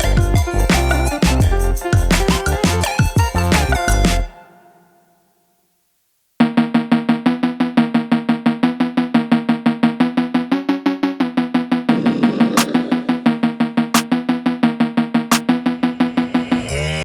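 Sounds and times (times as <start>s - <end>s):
fast pitched percussion music: 0.0s - 4.3s.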